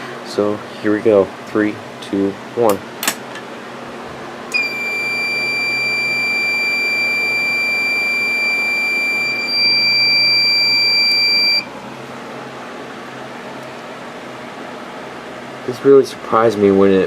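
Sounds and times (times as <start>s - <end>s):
high-pitched alarm buzzer: 4.6s - 11.7s.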